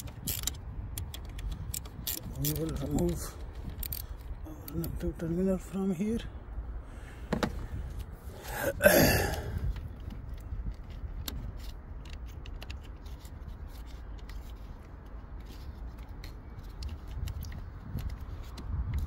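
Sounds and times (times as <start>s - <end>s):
wrench clicking on metal nut: 0.0s - 5.1s
low steady rumble: 0.0s - 19.0s.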